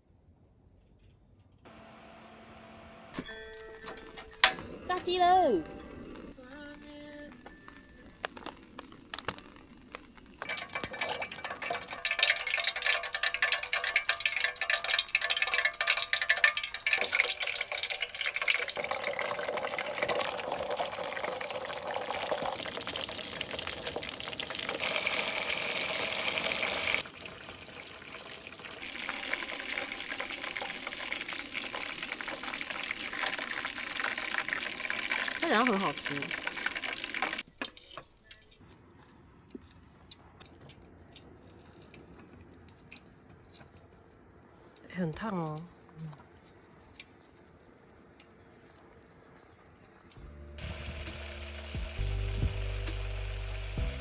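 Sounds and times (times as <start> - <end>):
chicken deep-frying in oil: 7.6 - 38.6, 45.0 - 54.0.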